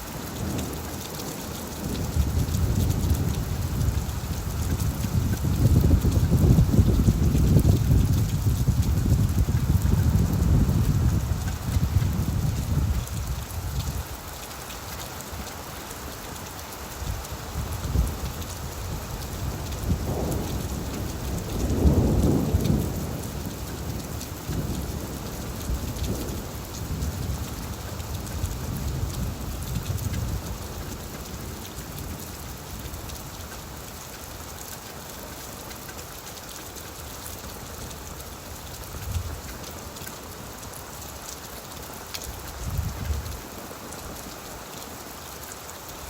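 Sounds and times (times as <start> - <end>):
rain falling on leaves: 0.0 - 46.0
thunder rumbling: 1.8 - 13.8, 19.0 - 30.4.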